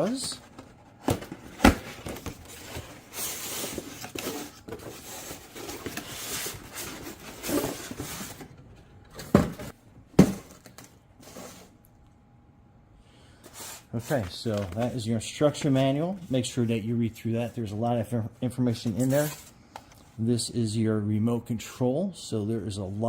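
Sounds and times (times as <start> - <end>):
rustling of packaging and paper: 0.0 - 8.6, 13.4 - 16.6.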